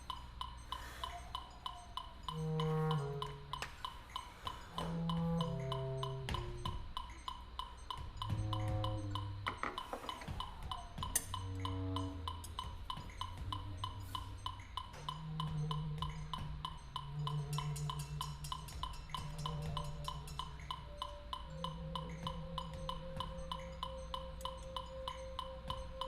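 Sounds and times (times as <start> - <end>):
steady ticking pulse: 0.0 - 26.0
bass clarinet low notes: 2.3 - 3.6, 4.7 - 6.8, 8.3 - 9.2, 11.1 - 12.4, 13.4 - 18.5, 19.2 - 26.0.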